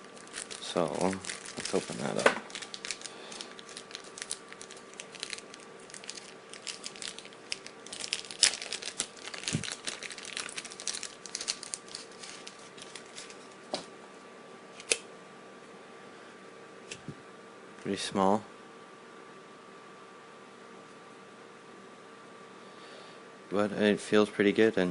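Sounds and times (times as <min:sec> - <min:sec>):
plastic packaging crinkling: 0:00.0 - 0:13.6.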